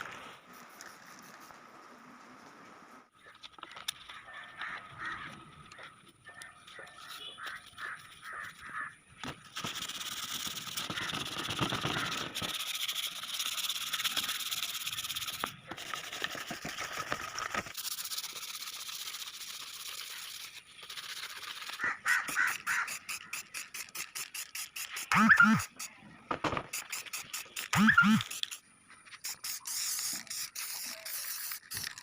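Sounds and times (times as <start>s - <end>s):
hand sanding rasp: 9.6s - 16.8s.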